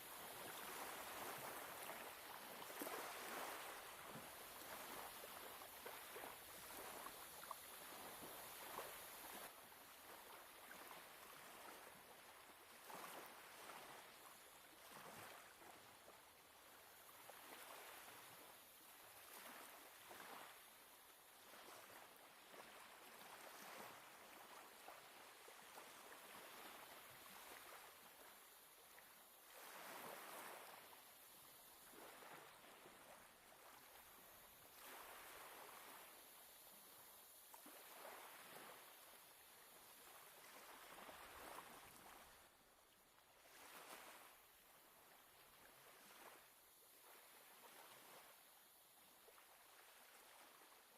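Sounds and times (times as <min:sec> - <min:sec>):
faint waves lapping at shore: 0:00.0 - 0:50.9.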